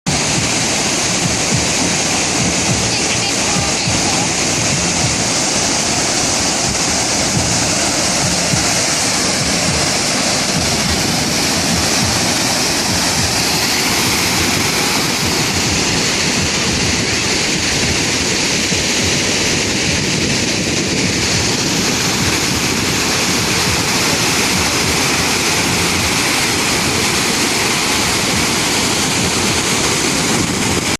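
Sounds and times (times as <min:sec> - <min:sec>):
waterfall rushing: 0:00.0 - 0:30.9.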